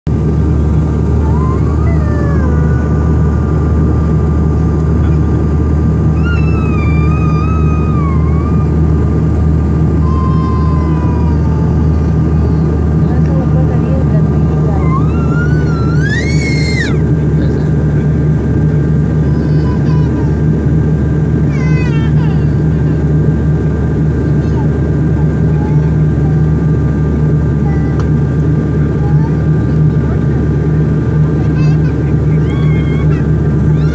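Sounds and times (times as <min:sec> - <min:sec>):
faint engine whine: 0:00.1 - 0:33.9
jet engines rumbling: 0:00.1 - 0:33.9
high falling tone: 0:05.6 - 0:11.7.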